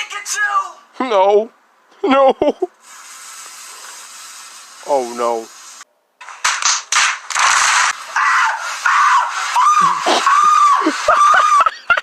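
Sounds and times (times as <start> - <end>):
firework hissing spray: 2.8 - 5.9, 6.5 - 11.7
firework cracks: 2.8 - 11.6
firework high-pitched screaming: 7.3 - 11.8.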